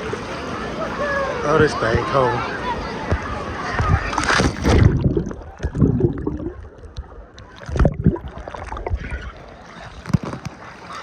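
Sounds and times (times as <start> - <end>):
water sloshing and lapping: 2.6 - 11.0
dull low thumps: 3.8 - 9.0.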